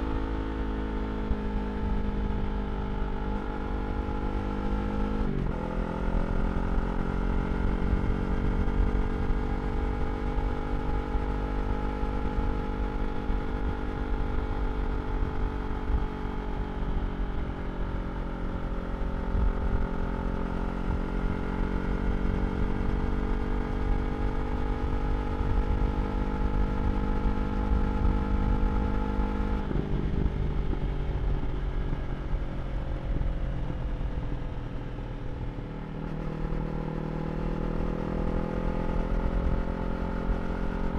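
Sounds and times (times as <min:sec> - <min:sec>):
motorcycle engine running: 0:00.0 - 0:40.9
low wind rush: 0:26.8 - 0:40.9.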